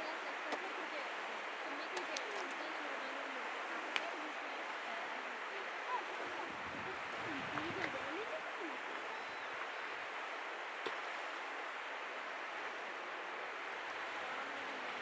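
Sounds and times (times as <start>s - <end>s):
river rushing: 0.0s - 15.0s.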